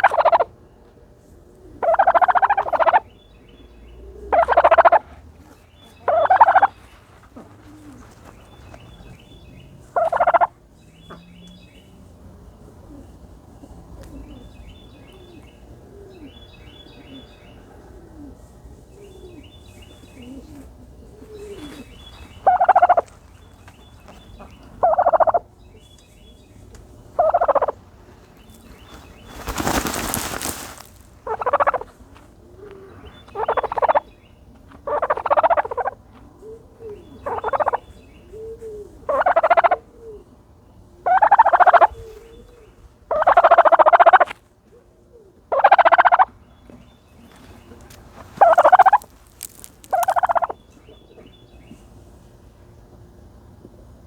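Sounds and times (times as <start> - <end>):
turkey gobbling: 0.0 - 0.5, 1.7 - 3.1, 4.0 - 5.2, 6.0 - 8.2, 9.8 - 10.6, 20.1 - 23.2, 24.3 - 25.5, 27.2 - 27.8, 28.8 - 32.0, 32.6 - 34.1, 34.8 - 40.2, 41.0 - 42.0, 43.1 - 44.4, 45.4 - 46.3, 47.8 - 50.6
turkey purring: 0.0 - 0.5, 1.5 - 11.6, 15.1 - 23.1, 24.3 - 25.5, 27.1 - 34.1, 34.7 - 40.4, 41.0 - 44.4, 45.1 - 46.3, 47.7 - 50.6.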